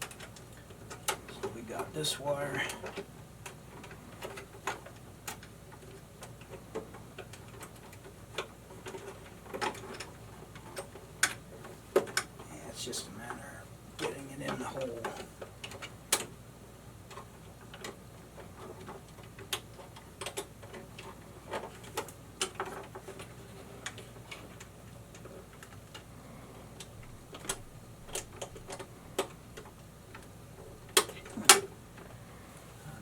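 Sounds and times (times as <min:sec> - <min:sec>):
faint steady hum: 0:00.0 - 0:33.0.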